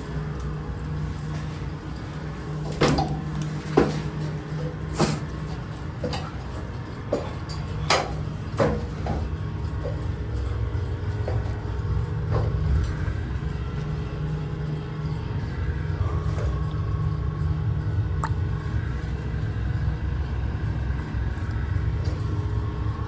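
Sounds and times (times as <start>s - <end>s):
low machinery hum: 0.0s - 23.0s
sharp knocks and clanks: 1.3s - 13.3s.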